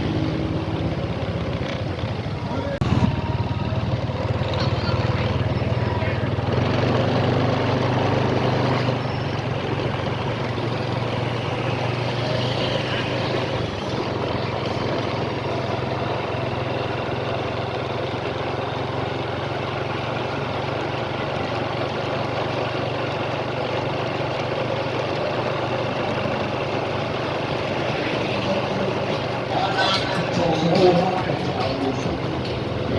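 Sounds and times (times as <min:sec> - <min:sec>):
low engine-like rumble: 0:00.9 - 0:07.2, 0:20.2 - 0:32.9
noisy background: 0:26.1 - 0:32.9.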